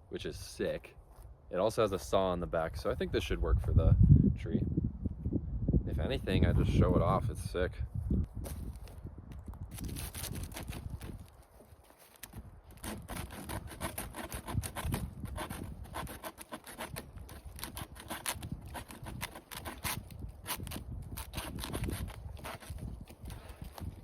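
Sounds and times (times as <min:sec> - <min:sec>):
machete sawing into dead tree: 0:09.7 - 0:11.3, 0:12.1 - 0:24.0.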